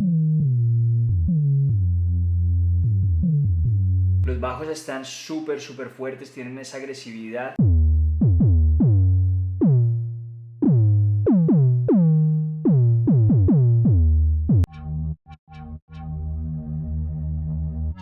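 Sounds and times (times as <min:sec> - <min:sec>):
sustained bass sound: 0:00.0 - 0:04.8, 0:07.6 - 0:18.0
synthesized trap bass notes: 0:07.6 - 0:14.9.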